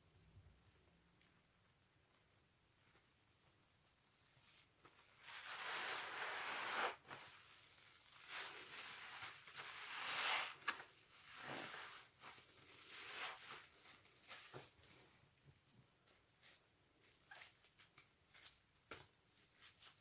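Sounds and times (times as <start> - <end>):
sponge squelching: 4.4 - 15.2.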